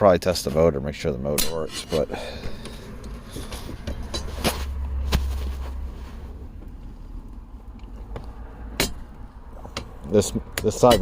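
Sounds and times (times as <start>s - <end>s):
seat mechanism clicks and knocks: 7.3s - 11.0s.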